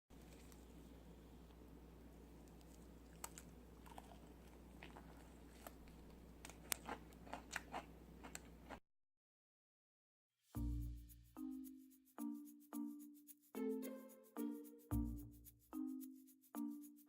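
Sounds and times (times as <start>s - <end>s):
crunchy chewing of fried chicken: 0.2s - 1.0s, 2.3s - 8.8s
low steady hum: 0.2s - 8.7s.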